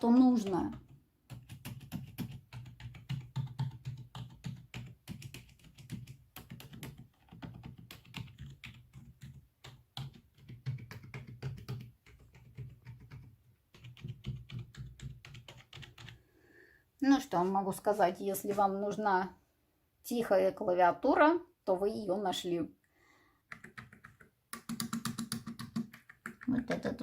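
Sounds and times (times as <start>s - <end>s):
fast typing on keyboard: 0.3s - 16.2s, 23.5s - 27.0s.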